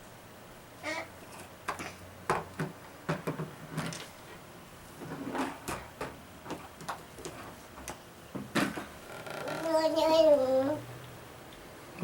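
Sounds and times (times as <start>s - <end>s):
household objects knocking: 1.7s - 3.6s.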